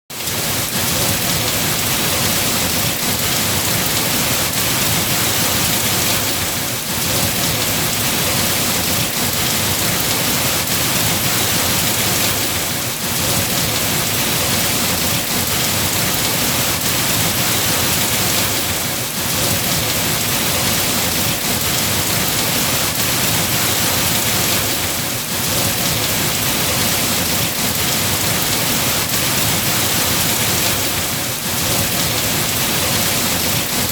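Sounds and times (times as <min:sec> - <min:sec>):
rain falling: 0:00.1 - 0:33.9.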